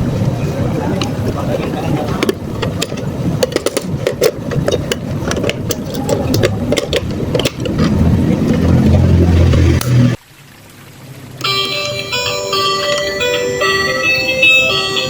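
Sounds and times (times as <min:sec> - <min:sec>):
plastic clicks and rattles: 0:02.1 - 0:08.0.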